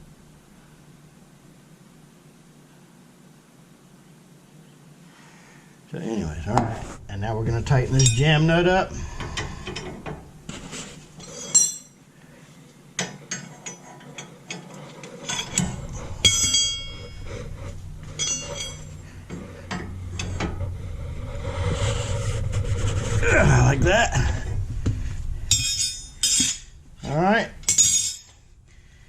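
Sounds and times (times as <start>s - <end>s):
metal ringing clinks: 8.0s - 8.4s, 11.2s - 12.0s, 15.3s - 17.3s, 18.1s - 19.1s, 25.5s - 26.7s, 27.6s - 28.3s.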